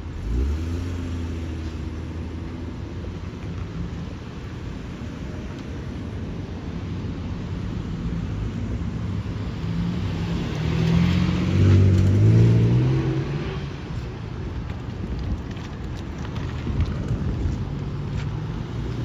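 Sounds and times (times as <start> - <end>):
steady low rumble: 0.0 - 11.5
car engine passing by: 6.8 - 14.2.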